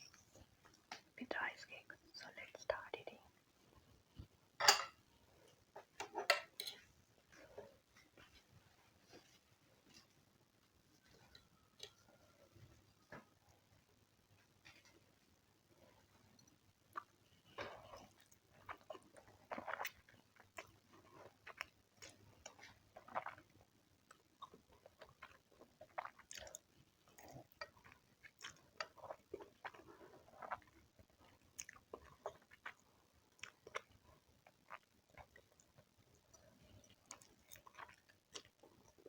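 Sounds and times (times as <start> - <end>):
person chewing food: 16.0 - 39.0.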